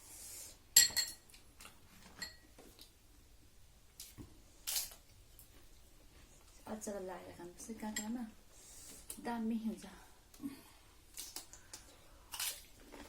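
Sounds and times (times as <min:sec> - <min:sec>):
tableware clinking: 0:00.8 - 0:01.2.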